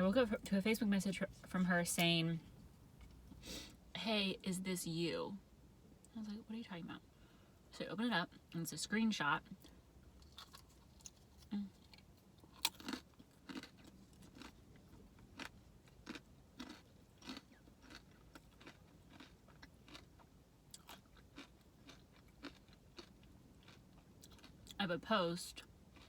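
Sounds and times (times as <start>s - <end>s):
person chewing crunchy food: 10.2s - 24.8s.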